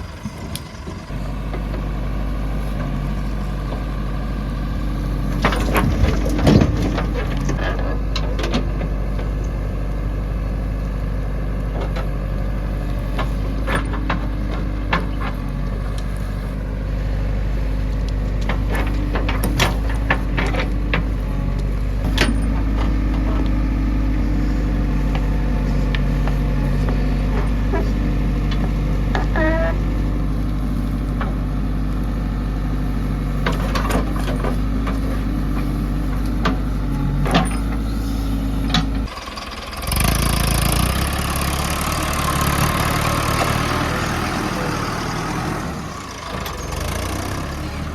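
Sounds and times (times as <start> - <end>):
heavy diesel engine running: 0.0 - 47.9
knocks and clanks: 5.3 - 9.4, 13.0 - 16.2, 18.3 - 23.7, 33.3 - 38.0
wavering squeak: 29.1 - 30.0.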